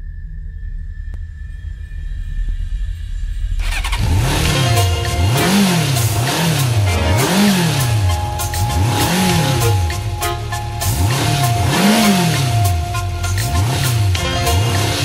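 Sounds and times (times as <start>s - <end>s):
engine revving: 3.6s - 15.0s
music beat: 4.2s - 15.0s.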